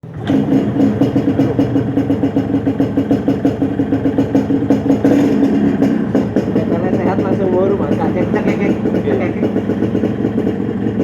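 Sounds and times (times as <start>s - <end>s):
two-stroke engine idling: 0.0s - 11.0s.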